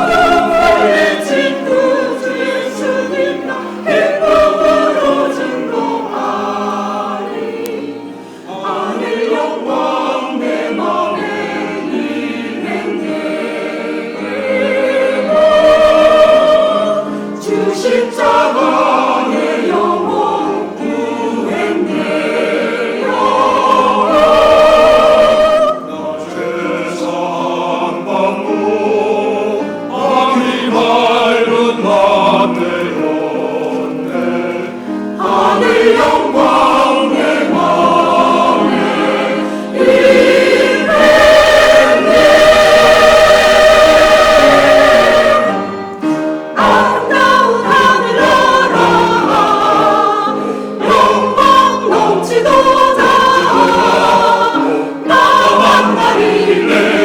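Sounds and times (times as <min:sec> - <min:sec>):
church choir singing a hymn: 0:00.0 - 0:57.0.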